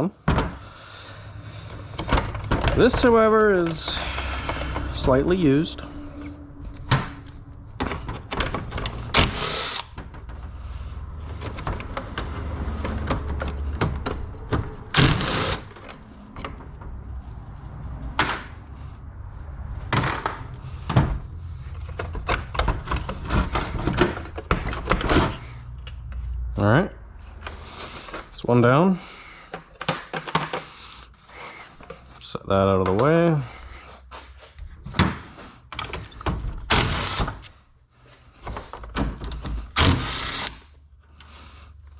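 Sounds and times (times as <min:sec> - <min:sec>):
plastic and metal parts clunking: 0:00.2 - 0:17.0, 0:19.8 - 0:26.3, 0:27.2 - 0:33.4, 0:34.2 - 0:40.1
impact driver whirring: 0:08.9 - 0:10.0, 0:14.9 - 0:15.8, 0:36.7 - 0:37.4, 0:39.7 - 0:40.7.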